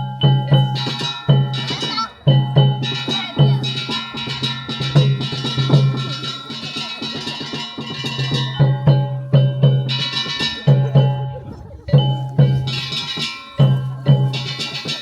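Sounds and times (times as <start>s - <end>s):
ringing metal gongs: 0.0s - 15.0s
taiko drum strikes: 0.0s - 15.0s.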